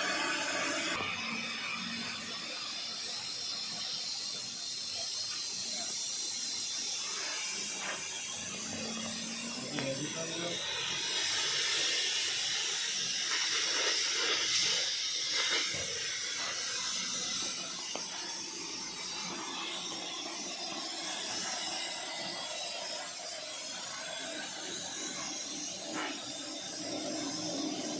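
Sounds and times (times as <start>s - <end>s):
steady hissing noise: 0.0s - 27.9s.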